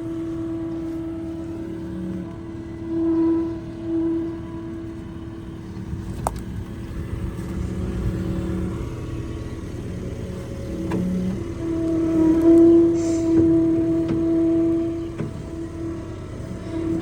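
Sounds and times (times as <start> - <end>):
loader engine running under load: 0.0 - 17.0.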